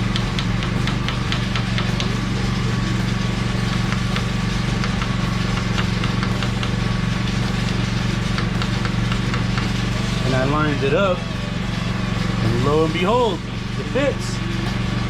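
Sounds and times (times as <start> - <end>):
machinery motor hum: 0.0 - 15.0.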